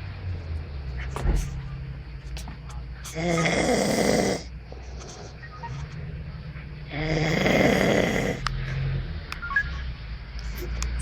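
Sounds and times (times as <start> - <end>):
person snoring very loudly: 3.1 - 4.5, 6.9 - 8.4.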